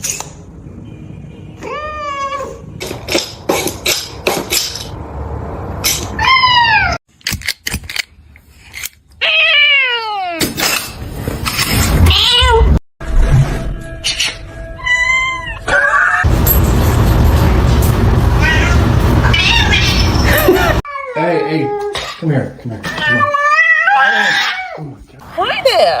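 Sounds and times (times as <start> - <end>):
cat meowing: 18.4 - 20.3, 22.9 - 24.8.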